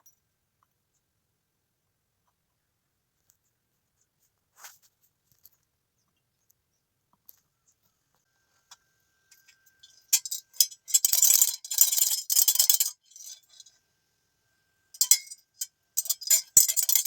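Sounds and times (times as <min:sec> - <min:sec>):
hand drum cords rattling: 0:09.3 - 0:13.7, 0:15.0 - 0:17.0.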